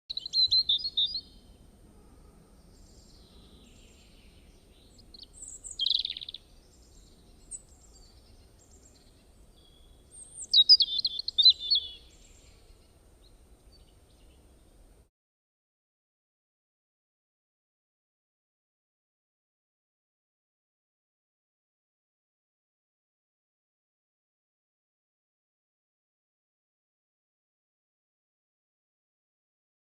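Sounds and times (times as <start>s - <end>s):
faint bird chirps: 0.1s - 14.8s
bird warbling song: 0.1s - 14.9s.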